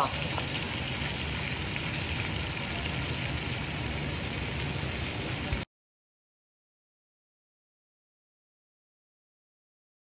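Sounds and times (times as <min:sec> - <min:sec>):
chicken sizzling in a pot: 0:00.0 - 0:05.7.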